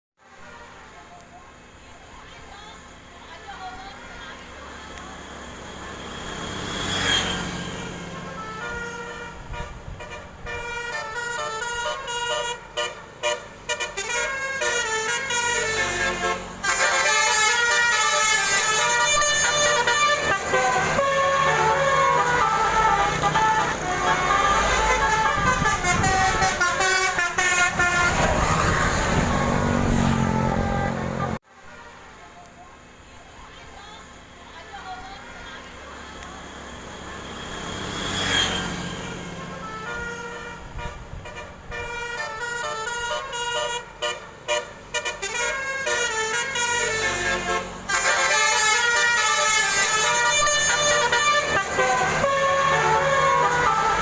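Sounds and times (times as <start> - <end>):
bus musical horn melody: 6.6 - 31.4, 37.1 - 54.0.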